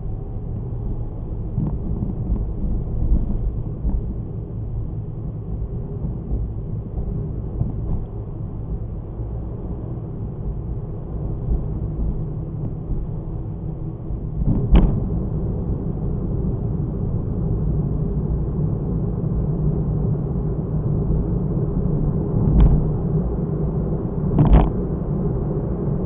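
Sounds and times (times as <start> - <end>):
car engine and road noise: 0.0 - 26.0
sharp thump: 14.4 - 15.1.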